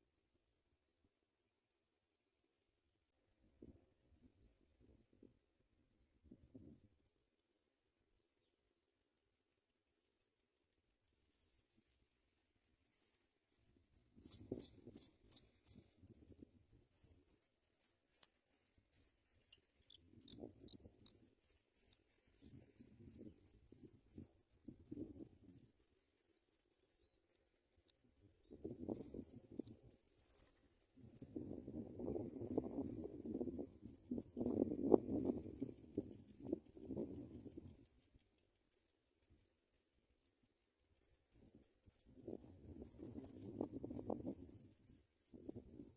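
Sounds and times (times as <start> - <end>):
nestlings cheeping: 12.9 - 31.4, 32.4 - 38.1, 41.0 - 45.9.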